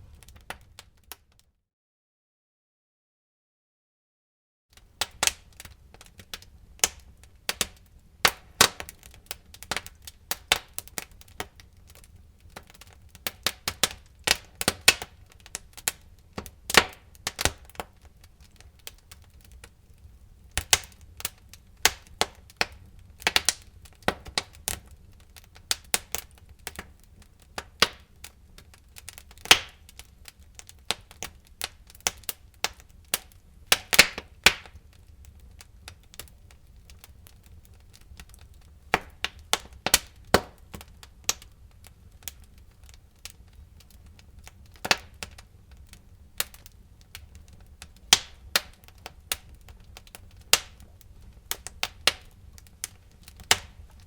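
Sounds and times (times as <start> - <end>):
low fire rumble: 0.0 - 1.1, 4.8 - 54.0
wood fire crackling: 0.0 - 1.5, 4.7 - 54.0.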